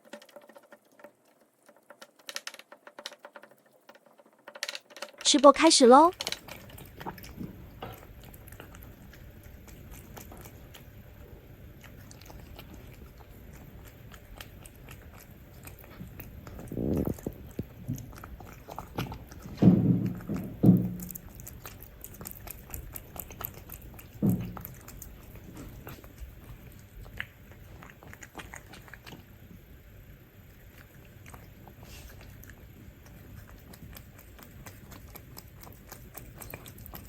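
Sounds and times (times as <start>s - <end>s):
cats eating wet food: 0.0s - 4.6s, 5.9s - 37.0s
dull knocks: 19.5s - 21.1s.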